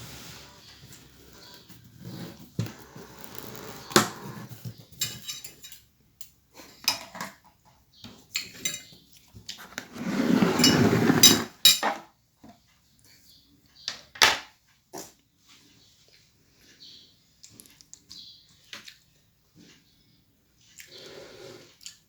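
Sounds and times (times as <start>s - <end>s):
cutlery clinking on a plate: 4.9s - 7.4s, 8.3s - 9.0s, 10.6s - 12.0s.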